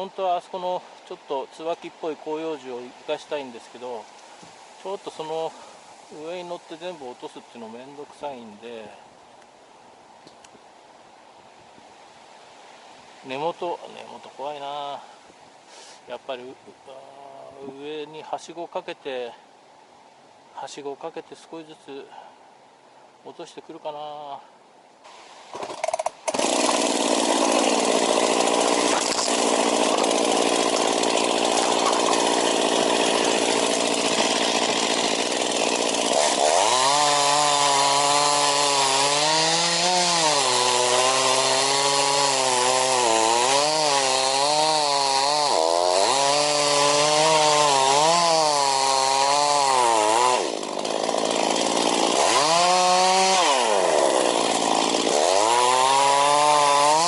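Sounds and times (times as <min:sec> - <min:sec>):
chainsaw cutting wood: 0:25.5 - 0:57.0.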